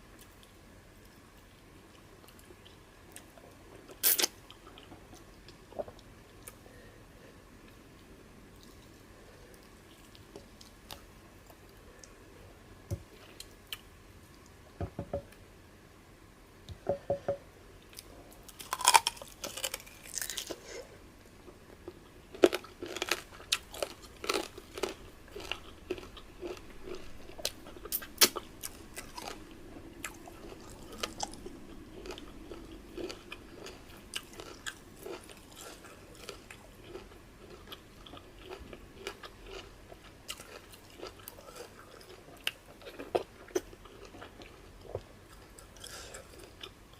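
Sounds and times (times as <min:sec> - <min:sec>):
chewing with wet smacks: 0:22.3 - 0:46.8.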